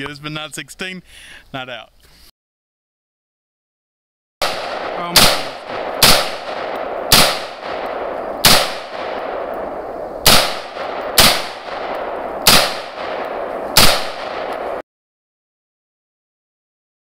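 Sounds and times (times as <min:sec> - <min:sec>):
rifle shots: 0:04.4 - 0:14.8.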